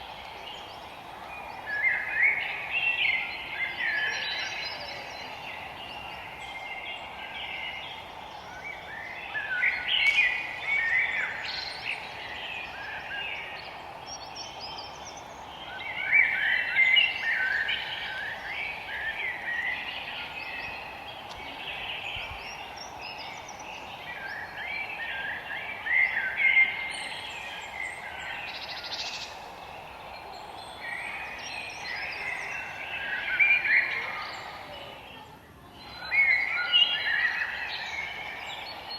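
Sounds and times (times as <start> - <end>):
low background hiss: 0.0 - 38.9
songbirds singing: 0.0 - 38.9.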